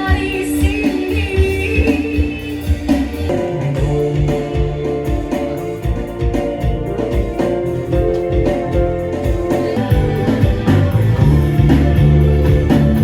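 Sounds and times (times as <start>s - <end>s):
low bass: 2.4s - 13.0s
plucked guitar: 2.6s - 13.0s.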